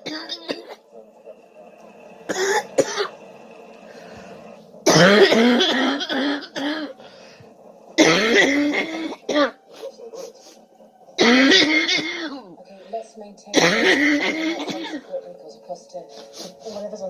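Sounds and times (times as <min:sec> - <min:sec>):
person coughing: 0:04.9 - 0:07.0, 0:08.0 - 0:09.6, 0:11.2 - 0:12.4, 0:13.6 - 0:15.1.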